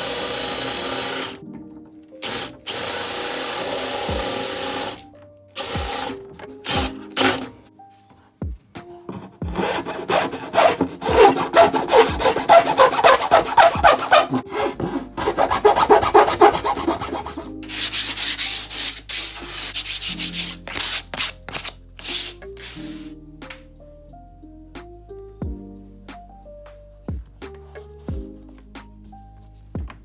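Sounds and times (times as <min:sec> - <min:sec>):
sandpaper rubbing on wood: 0:00.0 - 0:01.4, 0:06.7 - 0:07.5, 0:09.5 - 0:23.1.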